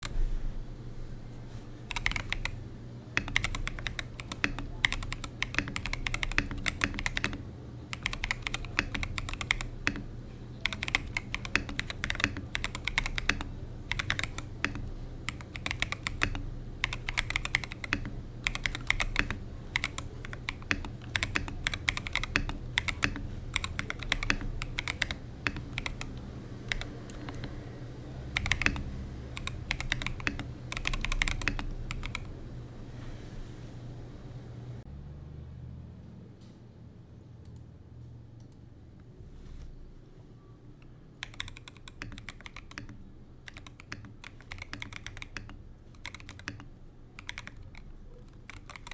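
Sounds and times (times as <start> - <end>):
mechanical keyboard typing: 1.8 - 32.4, 41.2 - 48.9.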